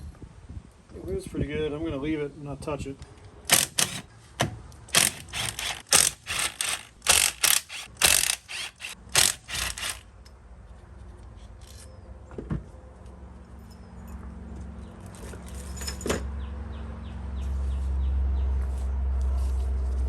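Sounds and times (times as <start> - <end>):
ratchet wrench clicking: 3.5 - 4.0, 4.9 - 10.0.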